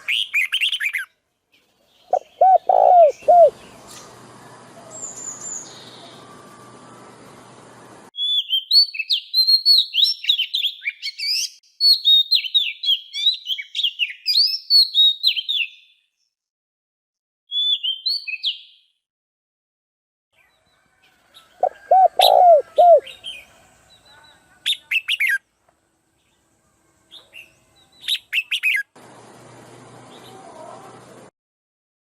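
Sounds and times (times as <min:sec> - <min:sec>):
songbird twittering: 0:02.0 - 0:04.0.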